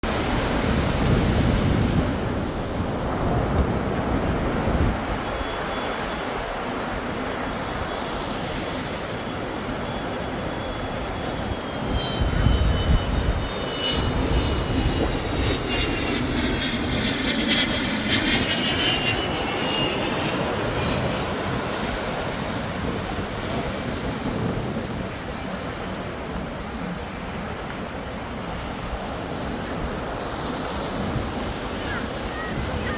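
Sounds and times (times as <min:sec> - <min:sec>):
ocean surf: 0:00.0 - 0:12.0, 0:19.8 - 0:32.9
wind: 0:00.0 - 0:32.9
high whine falling in pitch: 0:09.3 - 0:23.2.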